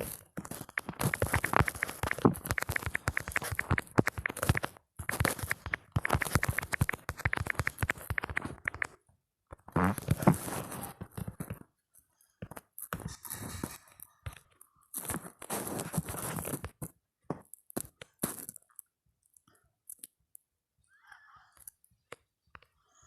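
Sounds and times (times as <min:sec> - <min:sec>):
phone keyboard tapping clicks: 0:00.6 - 0:09.0.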